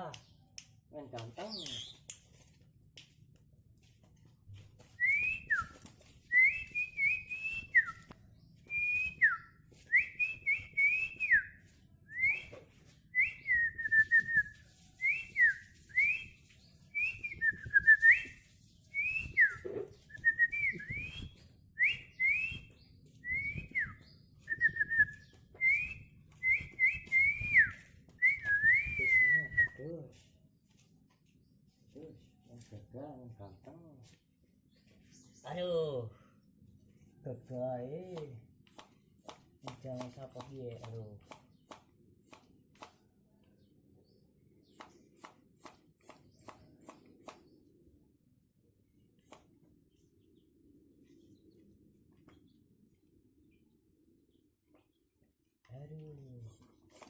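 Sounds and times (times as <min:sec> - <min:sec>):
person whistling a melody: 0:12.1 - 0:12.6, 0:19.0 - 0:29.8.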